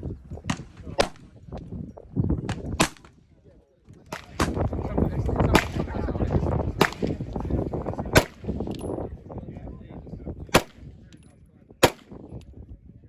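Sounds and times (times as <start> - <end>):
gunshots with short echo: 4.1 - 8.9, 10.5 - 11.0, 11.8 - 12.3.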